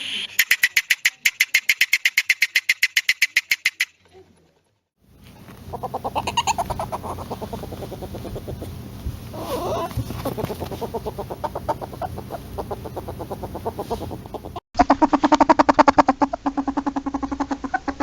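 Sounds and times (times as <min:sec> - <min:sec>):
polecat high chatter: 0:05.6 - 0:14.6
polecat clucking chuckle: 0:05.6 - 0:18.0.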